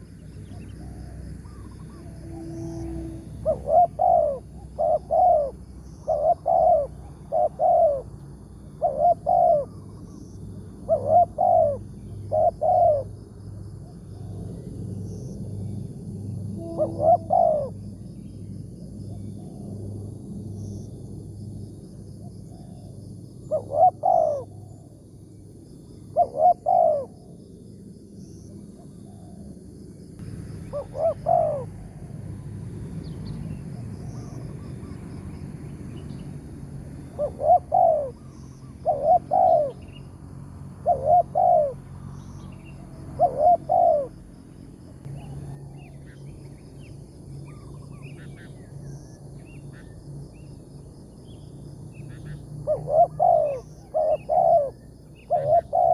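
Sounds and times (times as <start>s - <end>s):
dove cooing: 0.0s - 10.1s, 10.8s - 13.1s, 16.6s - 17.8s, 22.5s - 24.8s, 26.1s - 27.2s, 30.2s - 32.1s, 37.1s - 40.0s, 40.8s - 41.8s, 42.8s - 44.2s, 52.6s - 55.9s
small birds chirping: 37.2s - 40.2s, 40.8s - 55.9s.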